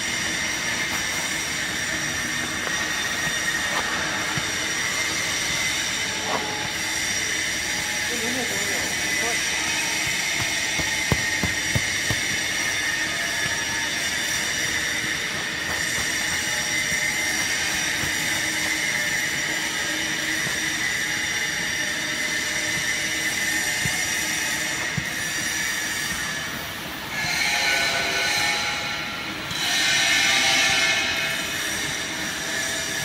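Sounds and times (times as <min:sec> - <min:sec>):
high-pitched machine whine: 0:00.0 - 0:33.0
baler machine running: 0:03.3 - 0:25.2.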